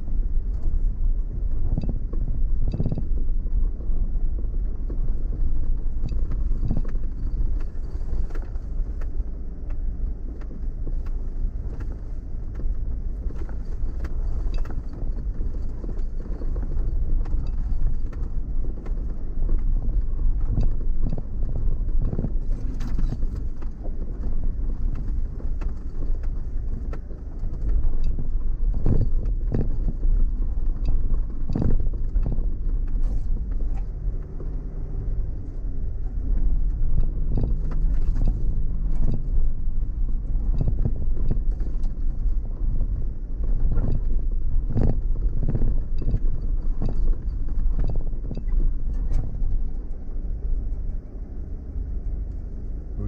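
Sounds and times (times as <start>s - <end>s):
off-road vehicle engine rumble: 0.0s - 53.0s
knocks and thumps from bumps: 24.9s - 30.0s, 40.4s - 42.1s, 43.5s - 49.5s.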